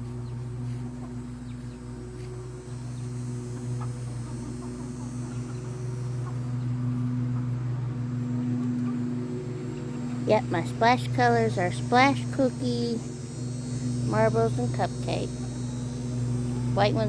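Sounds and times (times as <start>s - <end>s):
chicks peeping: 0.0s - 10.7s
chickens clucking: 0.0s - 17.0s
steady low hum: 0.0s - 17.0s.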